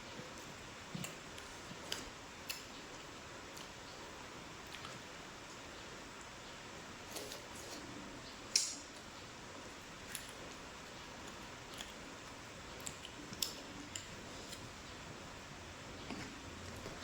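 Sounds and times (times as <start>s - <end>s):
eating clicks and crunches: 10.0s - 15.0s.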